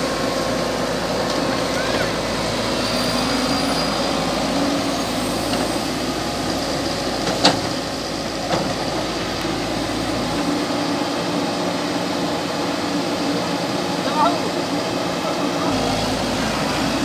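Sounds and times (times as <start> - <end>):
diesel engine running: 0.0 - 14.0, 15.5 - 17.0.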